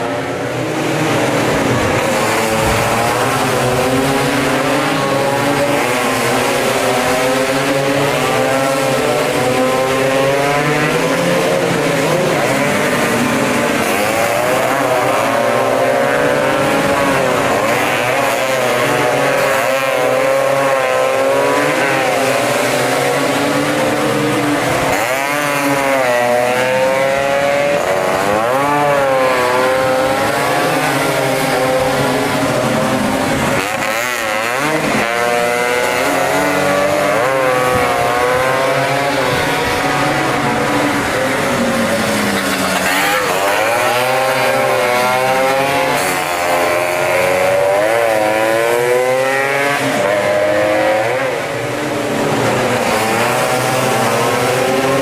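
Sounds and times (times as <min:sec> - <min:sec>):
scooter engines revving: 0:00.0 - 0:55.0.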